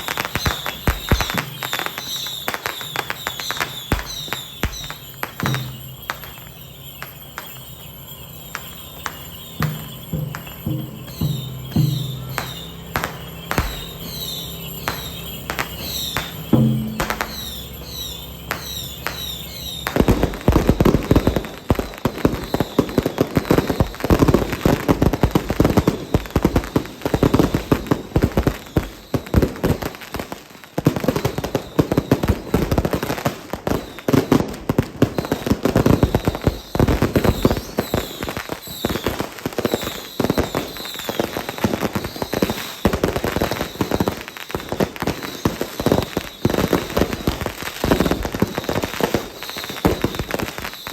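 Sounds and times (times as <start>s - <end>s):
firecrackers crackling and banging: 0.0s - 50.9s
music: 8.5s - 18.5s.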